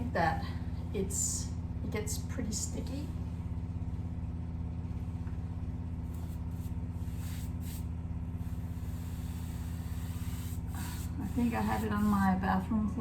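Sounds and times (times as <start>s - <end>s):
washing machine humming: 0.0s - 13.0s
paint roller swishing on wall: 6.1s - 12.3s.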